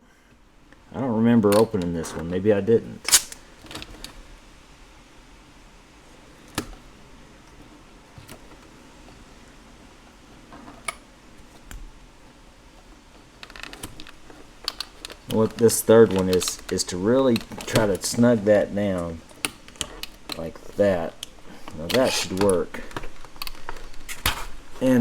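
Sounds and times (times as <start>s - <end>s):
faint steady hiss: 0.0s - 25.0s
plastic clock parts clicking: 13.3s - 24.4s.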